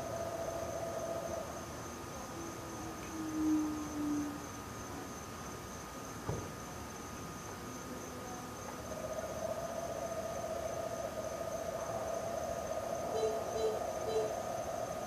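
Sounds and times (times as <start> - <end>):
frogs croaking in pulsing trill: 0.0 - 4.9, 8.0 - 15.0
high insect trill: 0.0 - 15.0.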